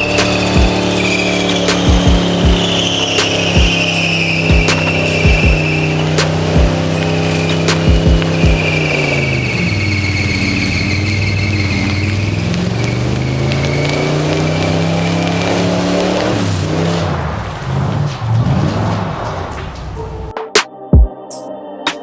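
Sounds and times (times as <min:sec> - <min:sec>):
car engine revving: 0:00.0 - 0:20.3.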